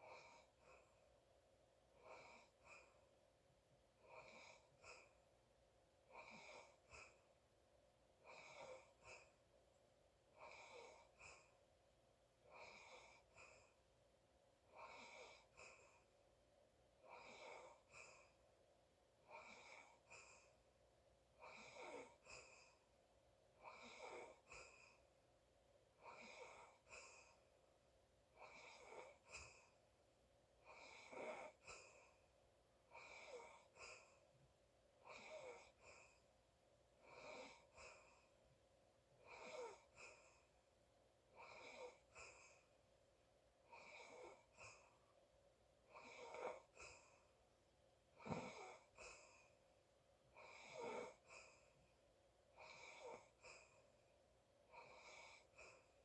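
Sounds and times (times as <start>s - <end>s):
person snoring faintly: 48.2s - 49.4s, 50.4s - 51.6s.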